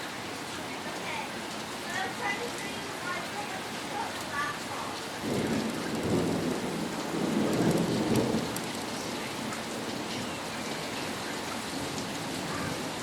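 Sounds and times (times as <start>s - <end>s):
steady rain: 0.0s - 13.0s
thunder rolling: 5.2s - 10.1s.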